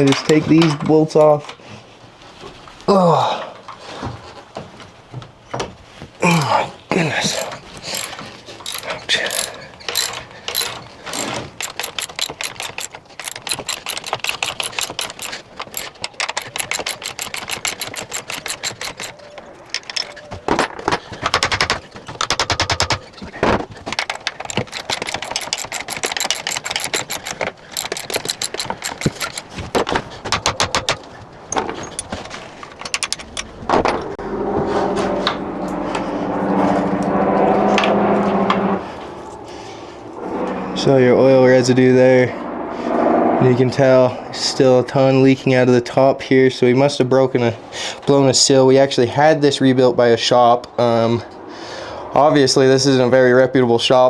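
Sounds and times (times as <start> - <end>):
ratchet wrench clicking: 7.3 - 19.2, 24.0 - 29.6.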